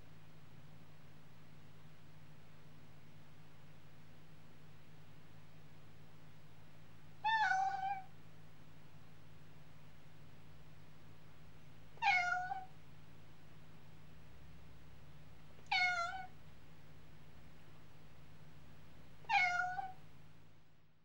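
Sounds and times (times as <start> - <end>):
faint low hum: 0.0 - 21.0
cat meowing: 7.3 - 8.1, 12.0 - 12.7, 15.7 - 16.3, 19.2 - 20.0.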